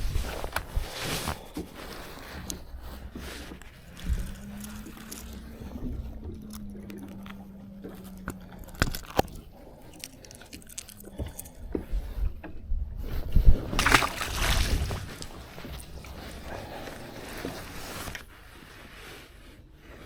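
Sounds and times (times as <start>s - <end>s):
water splashing against boat: 13.1s - 18.9s.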